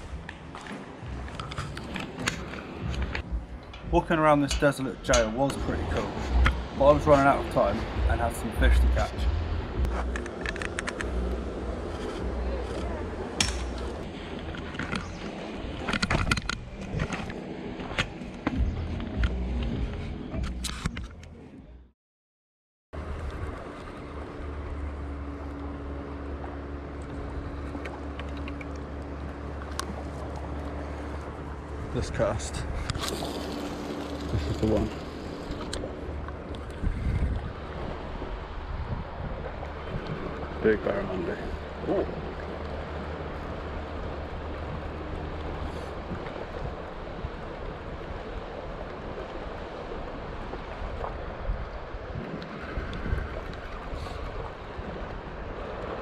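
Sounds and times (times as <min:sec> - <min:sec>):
low motor drone: 0:00.0 - 0:21.9, 0:23.0 - 0:56.0
low steady hum: 0:00.0 - 0:21.9, 0:23.0 - 0:56.0
small clicks: 0:10.0 - 0:11.4, 0:27.0 - 0:29.9
wind buffeting microphone: 0:30.7 - 0:56.0.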